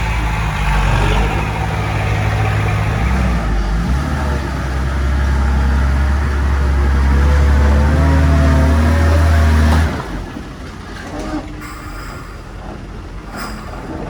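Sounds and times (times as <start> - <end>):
heavy diesel engine under load: 0.0 - 14.0.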